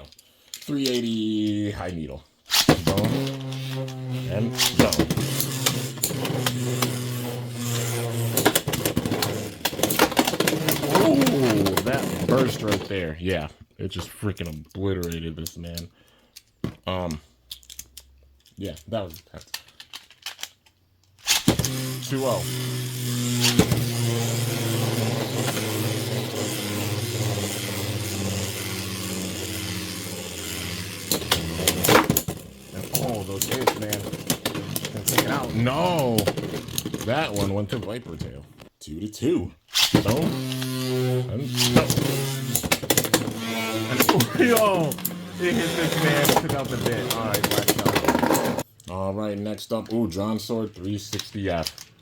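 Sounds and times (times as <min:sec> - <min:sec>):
spinning tops whirring: 0:02.5 - 0:13.0, 0:21.2 - 0:37.5, 0:39.7 - 0:48.7
spinning tops clacking together: 0:21.2 - 0:37.0.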